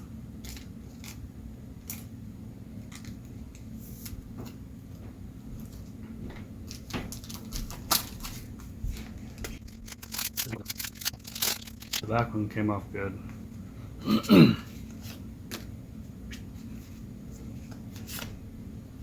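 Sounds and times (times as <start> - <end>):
low hum: 0.0 - 19.0
trading cards scraping and clicking: 6.7 - 12.0.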